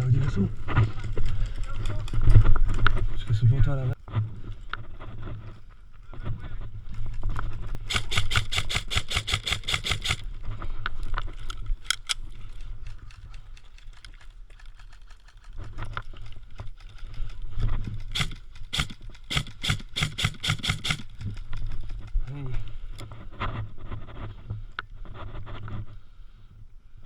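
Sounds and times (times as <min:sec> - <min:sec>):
airsoft rifle shots: 0:07.8 - 0:10.3, 0:18.0 - 0:21.4.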